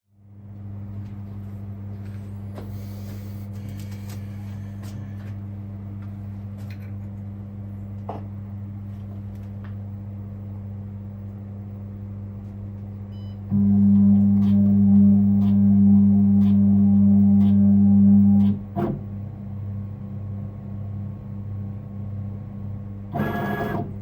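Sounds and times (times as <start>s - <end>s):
low machine hum: 0.1s - 24.0s.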